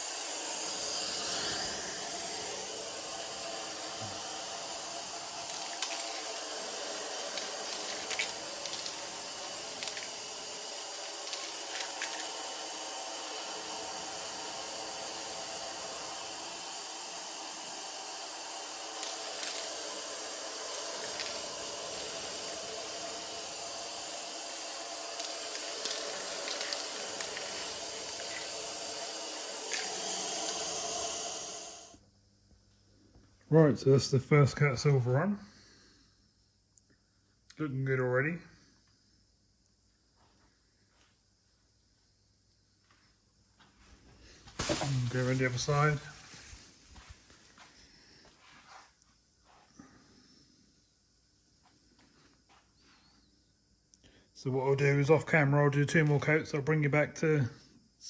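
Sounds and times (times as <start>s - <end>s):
spray paint hissing: 0.0s - 32.0s, 44.4s - 47.8s.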